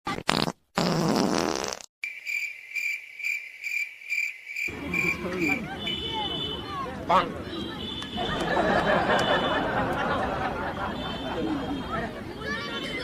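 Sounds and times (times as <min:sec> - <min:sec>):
wet fart sound: 0:00.1 - 0:01.9
cricket chirping: 0:02.0 - 0:06.5
street noise: 0:02.0 - 0:13.0
voices: 0:04.7 - 0:13.0.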